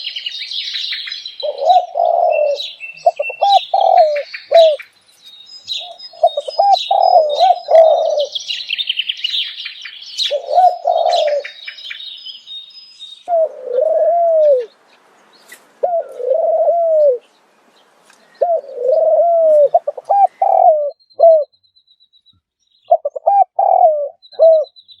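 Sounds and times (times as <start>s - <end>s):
small birds chirping: 0.0s - 25.0s
doves cooing: 1.4s - 4.8s, 5.8s - 8.4s, 10.2s - 11.8s, 13.3s - 14.7s, 15.8s - 17.2s, 18.4s - 21.5s, 22.9s - 24.7s.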